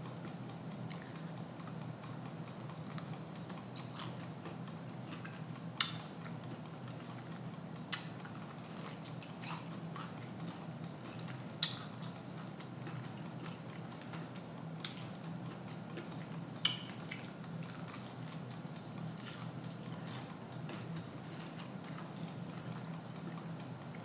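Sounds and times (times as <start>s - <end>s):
steady low hum: 0.0s - 24.0s
chewing fried food: 0.2s - 24.0s.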